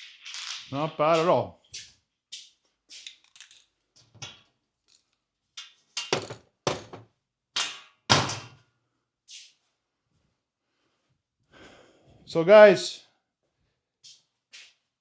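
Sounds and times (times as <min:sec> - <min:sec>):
hard thunks and knocks: 0:06.2 - 0:07.0.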